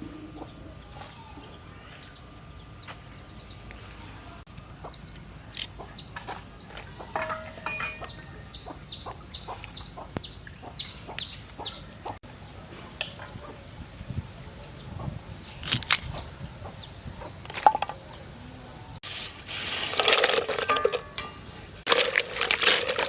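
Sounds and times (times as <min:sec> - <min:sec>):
chickens clucking: 0:00.0 - 0:02.1, 0:03.9 - 0:13.7, 0:14.4 - 0:19.0.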